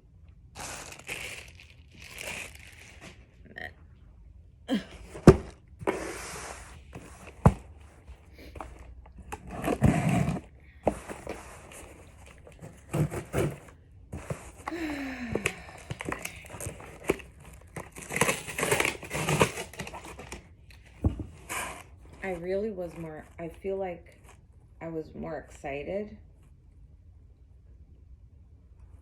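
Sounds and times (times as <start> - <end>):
packaging rustling and scraping: 0.6 - 3.3, 5.1 - 23.5.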